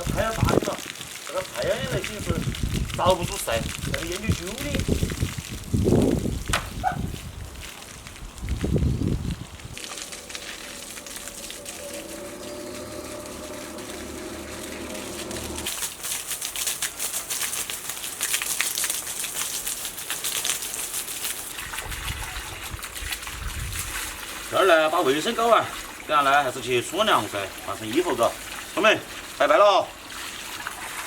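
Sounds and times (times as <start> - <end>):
water running and splashing: 0.0 - 31.0
mechanical hum: 10.1 - 15.7.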